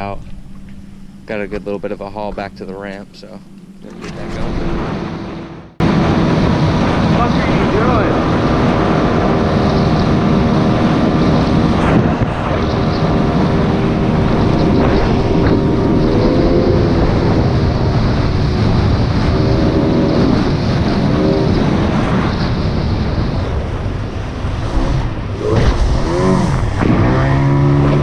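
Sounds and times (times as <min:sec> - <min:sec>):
outboard motor running: 0:00.0 - 0:22.0
wind on microphone: 0:00.0 - 0:28.0.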